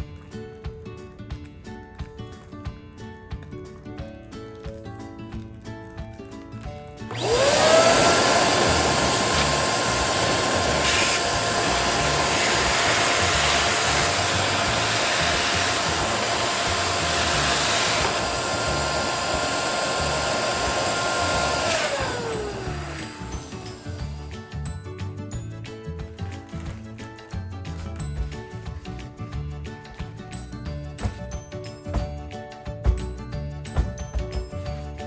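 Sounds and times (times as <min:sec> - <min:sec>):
electric balloon pump running: 0:07.1 - 0:24.6, 0:31.0 - 0:32.2.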